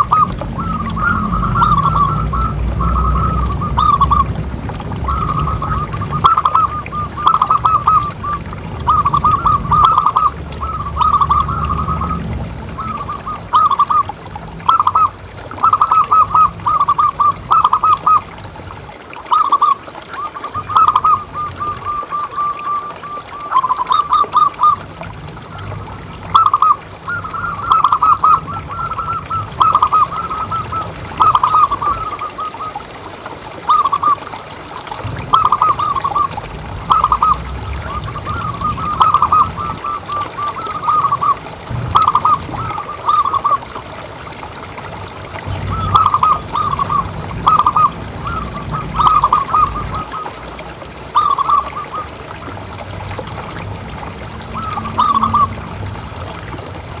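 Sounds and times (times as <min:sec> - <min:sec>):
doves cooing: 0:00.0 - 0:18.5, 0:19.1 - 0:56.7
low rumble: 0:41.6 - 0:43.0, 0:52.8 - 0:57.0.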